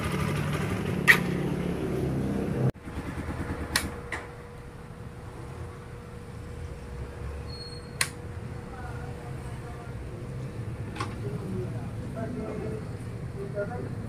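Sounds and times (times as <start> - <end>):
motorcycle engine idling: 0.0 - 1.8, 2.8 - 4.7.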